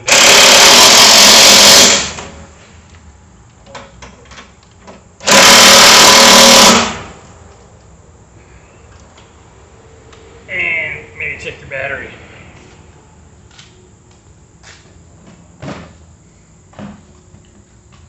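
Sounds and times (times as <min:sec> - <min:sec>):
power driver running: 0:00.0 - 0:02.4, 0:05.2 - 0:07.1.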